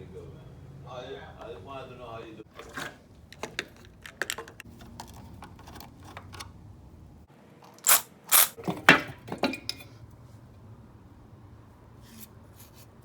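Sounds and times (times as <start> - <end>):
handling clicks and rustles: 2.5 - 6.6
loud scraping or crinkling strokes: 7.8 - 8.6.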